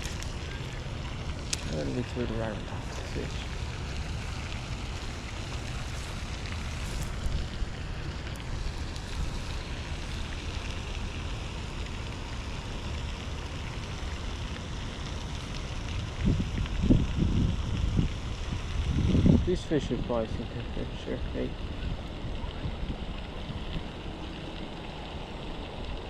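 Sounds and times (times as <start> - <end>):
wind buffeting microphone: 16.0 - 24.5.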